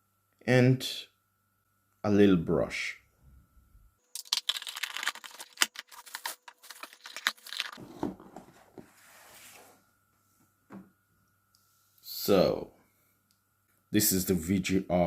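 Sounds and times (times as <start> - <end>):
plastic packaging crinkling and tearing: 4.2 - 7.8.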